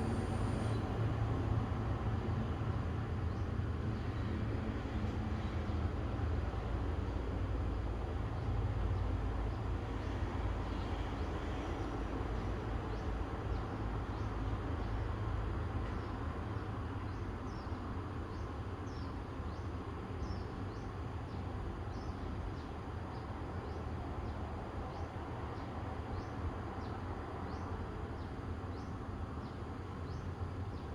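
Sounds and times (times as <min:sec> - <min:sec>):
passing vehicle rumble: 0:00.0 - 0:03.0
steady outdoor hiss: 0:00.0 - 0:30.9.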